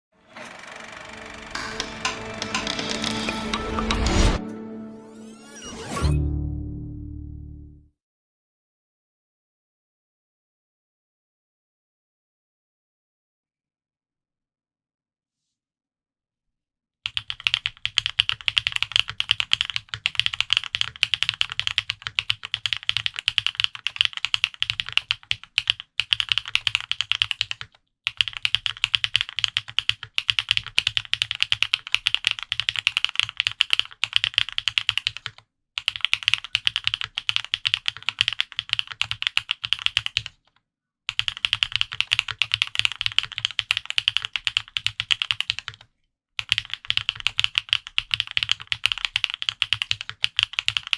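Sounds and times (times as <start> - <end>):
fast typing on mechanical keyboard: 17.1 - 40.5, 41.1 - 50.9.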